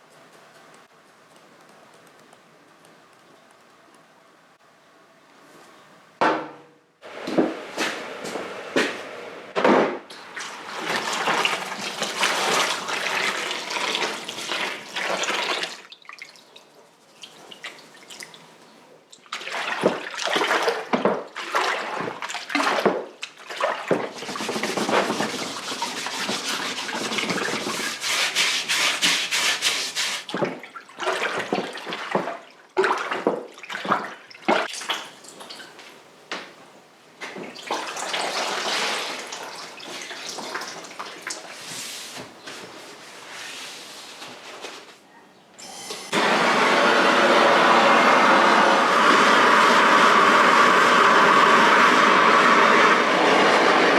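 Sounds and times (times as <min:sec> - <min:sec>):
water running and splashing: 0:10.2 - 0:18.6.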